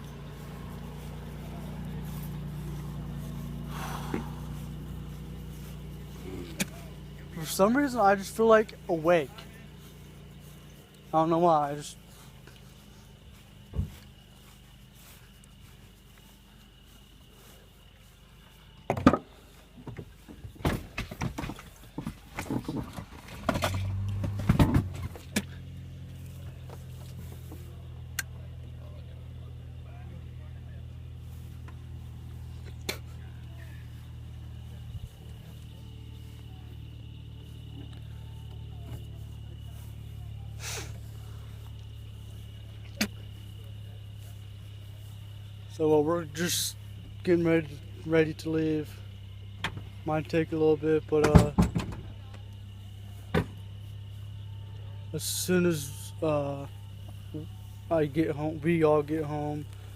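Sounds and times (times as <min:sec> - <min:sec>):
car engine idling: 0:00.0 - 0:59.9
clicks and knocks from car: 0:19.9 - 0:25.5, 0:51.3 - 0:52.1.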